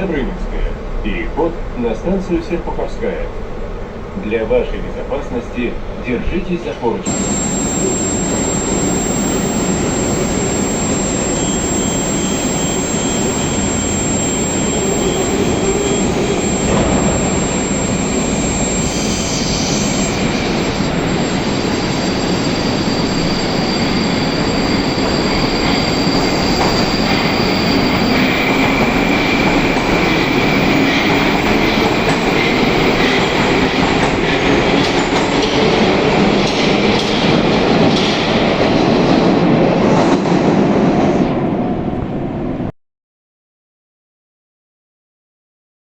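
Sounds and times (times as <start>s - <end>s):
metro train wheel noise: 0.0s - 42.7s
high whining tones: 6.8s - 39.2s
wheel squeal: 7.1s - 38.4s.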